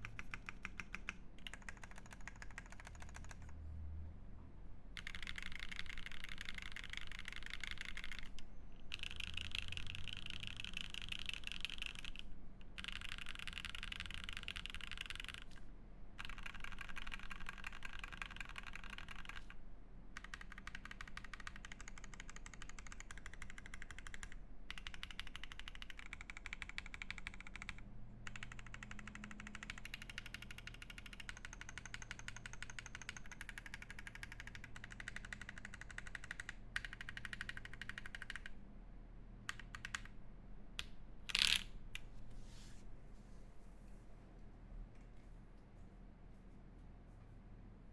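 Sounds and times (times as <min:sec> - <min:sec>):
mechanical keyboard typing: 0:00.0 - 0:03.6, 0:05.0 - 0:15.6, 0:16.2 - 0:19.6, 0:20.2 - 0:38.6, 0:39.5 - 0:40.2.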